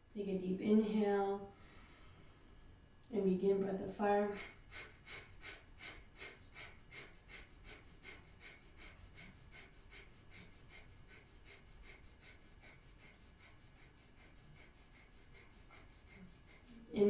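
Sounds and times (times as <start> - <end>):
rapid forceful nasal exhalations: 4.4 - 16.9.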